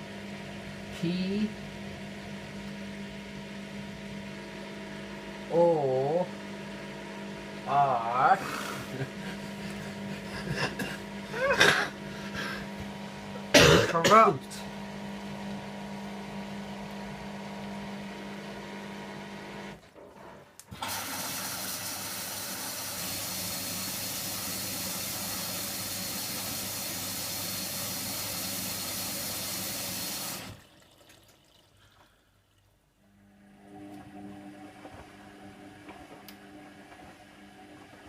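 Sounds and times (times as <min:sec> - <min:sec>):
washing machine hum: 0:00.0 - 0:38.0
water rushing into washer: 0:20.6 - 0:32.8.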